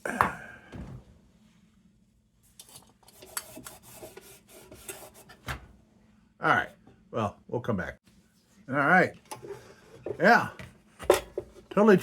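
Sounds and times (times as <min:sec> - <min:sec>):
rubbing and scraping on metal: 0:03.0 - 0:05.4.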